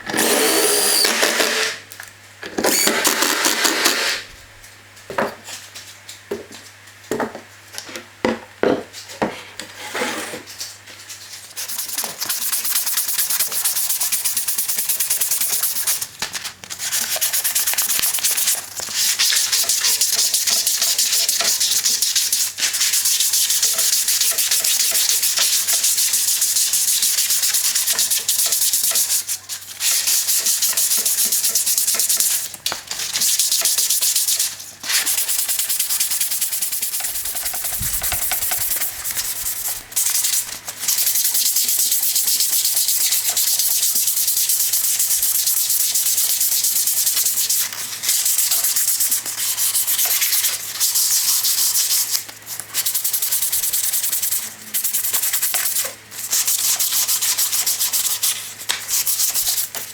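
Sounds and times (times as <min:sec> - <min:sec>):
sanding wood: 0:00.1 - 0:01.8, 0:02.7 - 0:04.3.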